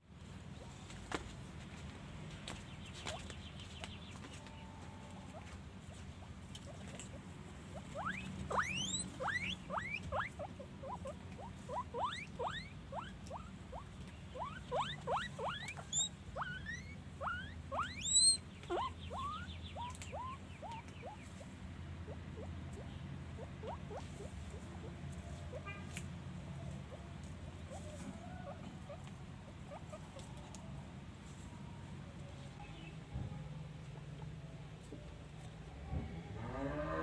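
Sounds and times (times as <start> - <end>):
guinea pigs wheeking: 6.2 - 26.0, 27.6 - 30.6.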